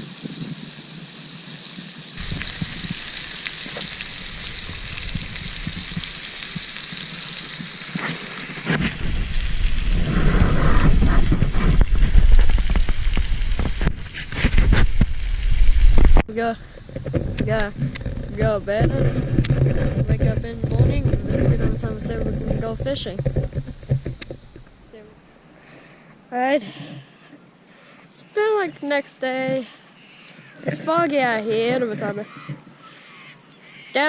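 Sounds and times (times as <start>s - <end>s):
meat sizzling on a grill: 0.0s - 16.6s
crackles: 0.0s - 34.0s
heavy low rumble: 8.8s - 25.2s.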